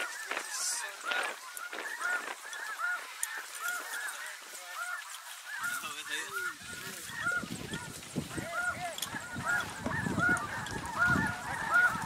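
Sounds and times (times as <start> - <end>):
geese honking: 0.0 - 12.0
wind gusts on microphone: 5.6 - 12.0.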